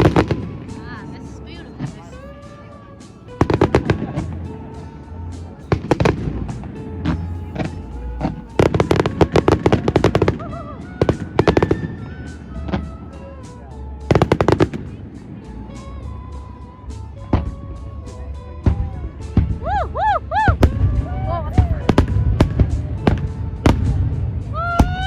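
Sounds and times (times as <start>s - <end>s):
music: 0.0s - 25.0s
fireworks bursting and crackling: 3.1s - 4.8s, 5.4s - 12.8s, 14.1s - 15.4s, 20.4s - 25.0s.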